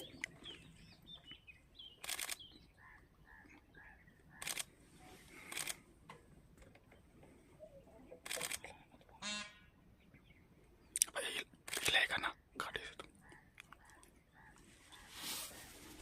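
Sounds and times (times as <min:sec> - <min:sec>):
faint bird chirps: 0:00.0 - 0:05.8, 0:13.2 - 0:16.0
camera shutters clicking: 0:02.0 - 0:02.4, 0:04.4 - 0:04.7, 0:05.5 - 0:05.8, 0:08.3 - 0:08.6, 0:11.7 - 0:12.0.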